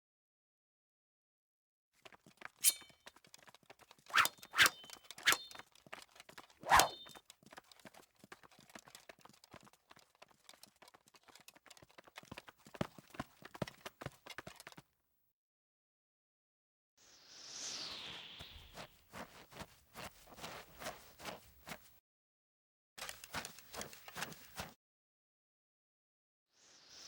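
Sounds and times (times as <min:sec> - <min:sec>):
small clicks and knocks: 0:02.1 - 0:14.8, 0:23.0 - 0:24.7.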